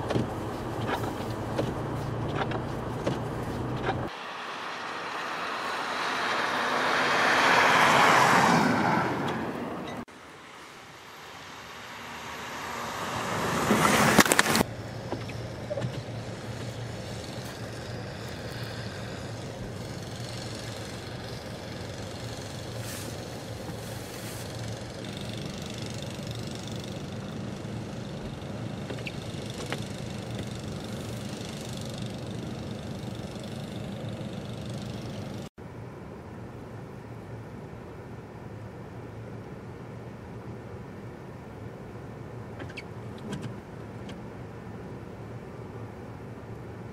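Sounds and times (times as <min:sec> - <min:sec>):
vehicle engine rushing: 0:00.0 - 0:35.5
engine humming: 0:00.0 - 0:46.9.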